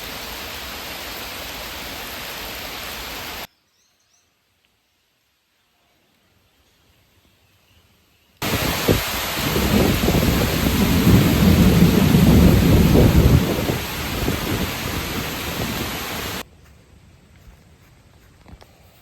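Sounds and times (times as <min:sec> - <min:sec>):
heavy rain pouring: 0:00.0 - 0:03.5, 0:08.4 - 0:16.4
deep rumble of thunder: 0:08.4 - 0:16.4.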